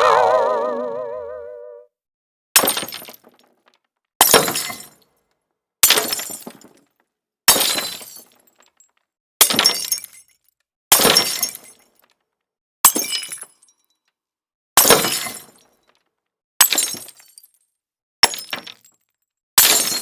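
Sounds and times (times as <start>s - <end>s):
glass shattering: 5.9s - 6.8s, 7.5s - 10.4s, 18.2s - 20.0s.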